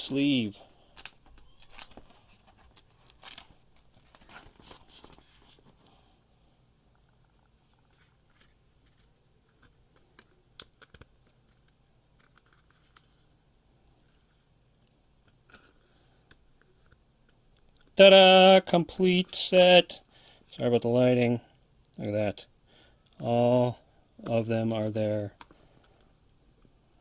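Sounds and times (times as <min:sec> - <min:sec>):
plastic sleeve rustling: 0:00.9 - 0:06.0.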